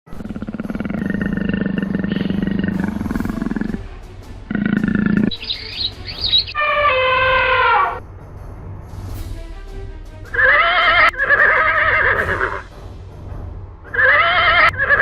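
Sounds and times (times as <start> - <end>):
big cat roaring: 0.1 - 5.3
quick chirping calls: 0.3 - 3.9, 4.6 - 7.0.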